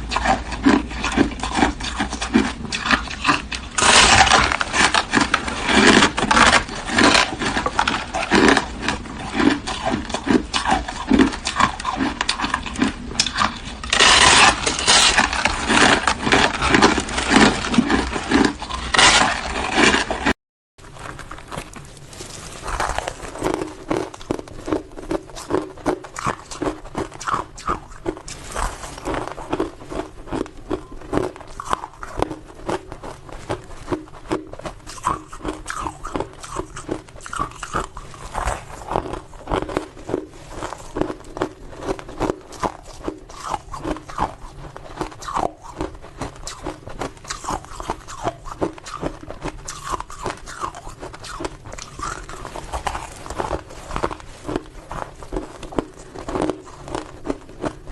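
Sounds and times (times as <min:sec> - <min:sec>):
ice being chewed: 0:00.0 - 0:57.9.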